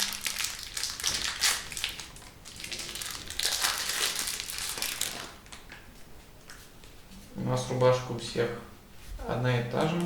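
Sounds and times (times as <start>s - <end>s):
plastic wrapping crinkling: 0.0s - 5.8s.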